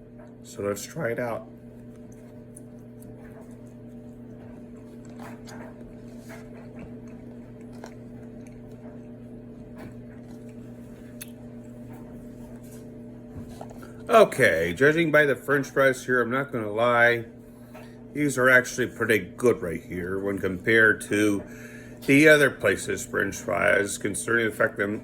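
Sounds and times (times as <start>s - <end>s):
low electrical hum: 0.0s - 25.0s
person chewing: 1.6s - 12.9s.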